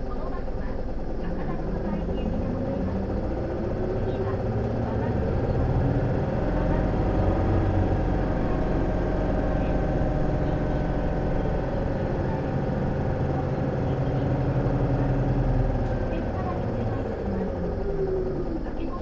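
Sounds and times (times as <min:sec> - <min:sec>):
bus diesel engine idling: 0:00.0 - 0:19.0.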